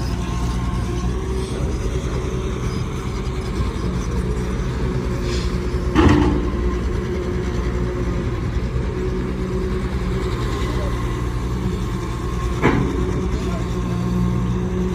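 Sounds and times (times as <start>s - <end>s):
excavator diesel engine running: 0.0s - 14.9s
loud metallic clank: 5.9s - 6.8s.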